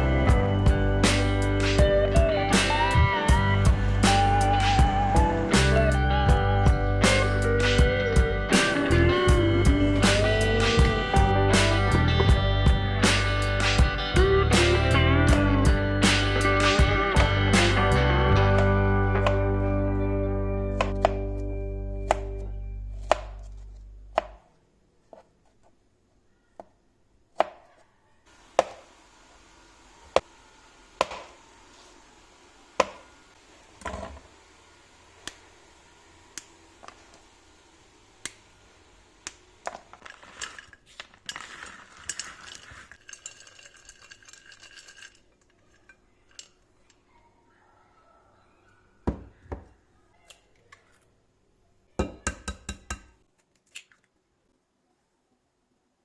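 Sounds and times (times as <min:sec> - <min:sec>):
faint steady hiss: 0:28.0 - 0:41.2.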